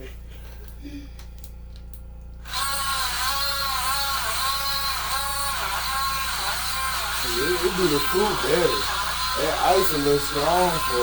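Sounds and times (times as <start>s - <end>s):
blender motor churning ice: 2.4s - 11.0s
person speaking: 7.2s - 11.0s.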